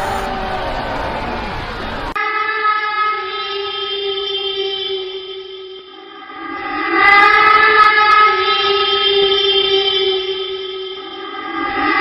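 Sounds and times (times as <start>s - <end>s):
sustained horror drone: 0.0s - 2.2s.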